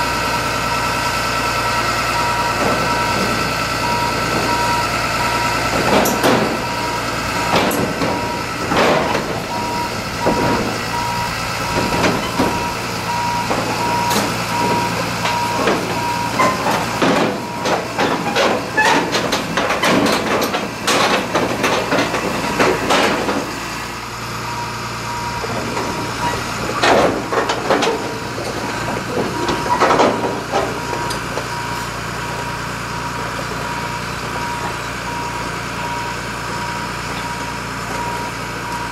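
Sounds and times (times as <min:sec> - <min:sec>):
reversing alarm beeping: 0:00.0 - 0:20.9, 0:21.8 - 0:27.3, 0:28.8 - 0:38.9
bulldozer engine running: 0:00.0 - 0:38.9
loud knocks and bangs: 0:05.7 - 0:11.0, 0:11.6 - 0:12.8, 0:13.4 - 0:23.5, 0:26.7 - 0:30.8.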